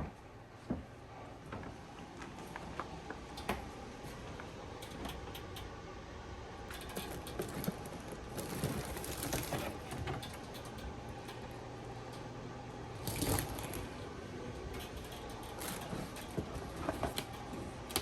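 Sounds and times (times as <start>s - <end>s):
rustling: 6.9s - 10.1s.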